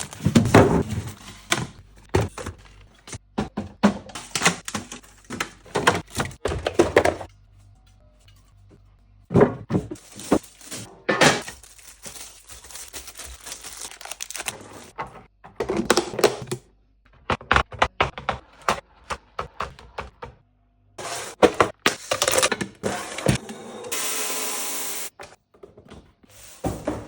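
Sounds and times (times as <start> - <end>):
plastic packaging crinkling: 0.0 - 0.5, 10.0 - 14.9
items knocking and clattering: 0.0 - 7.3, 9.3 - 16.6, 25.4 - 27.0.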